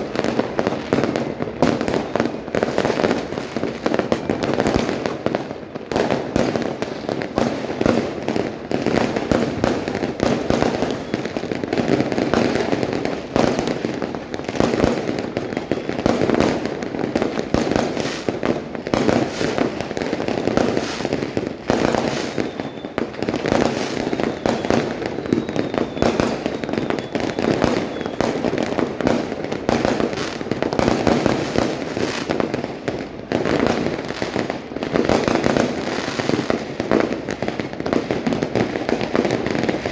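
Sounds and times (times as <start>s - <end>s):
fireworks and firecrackers banging: 0.0s - 39.9s.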